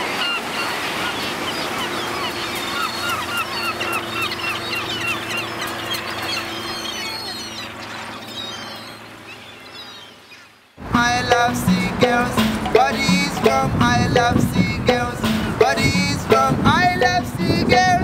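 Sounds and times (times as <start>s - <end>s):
seagulls yelping calls: 0.0s - 14.1s.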